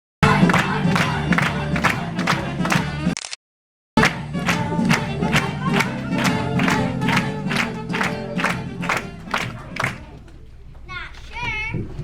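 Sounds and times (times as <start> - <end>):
group of voices: 0.2 - 3.1, 4.8 - 10.4
music with a steady beat: 0.2 - 3.1, 4.0 - 9.7.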